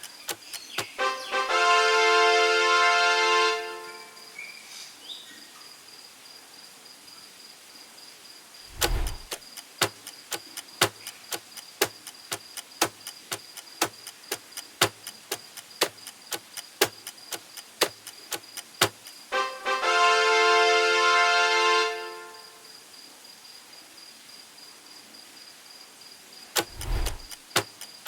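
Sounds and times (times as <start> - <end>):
clock ticking: 0.0 - 1.1, 8.7 - 19.3, 26.6 - 28.0.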